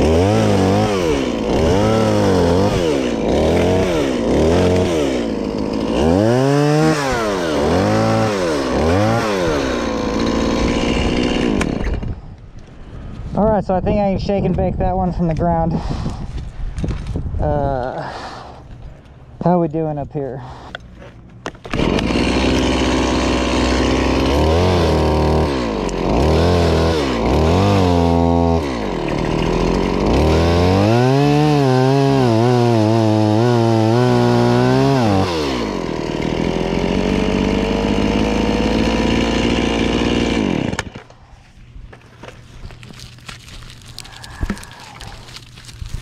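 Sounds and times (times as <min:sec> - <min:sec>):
chainsaw revving: 0:00.0 - 0:12.3, 0:21.6 - 0:41.2, 0:42.8 - 0:46.0.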